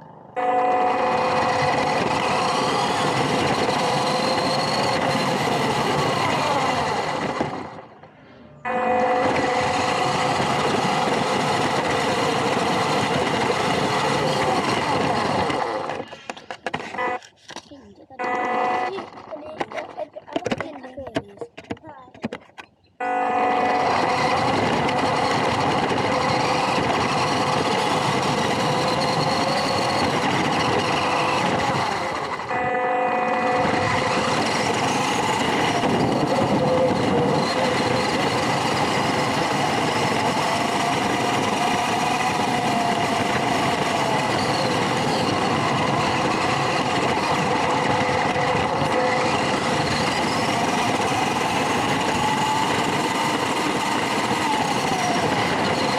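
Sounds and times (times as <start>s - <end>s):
electric motor and gear whine: 0.0s - 16.1s, 23.0s - 55.9s
wheels rolling: 0.4s - 22.8s, 23.6s - 55.9s.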